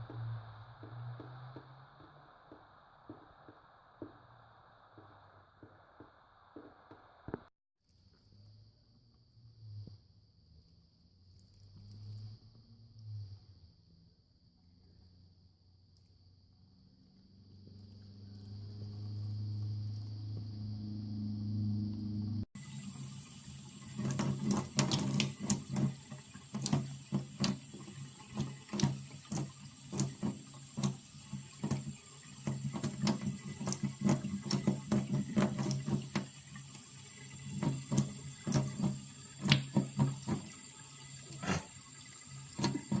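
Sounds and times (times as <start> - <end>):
tap water trickling: 0.1 - 4.2, 22.6 - 43.0.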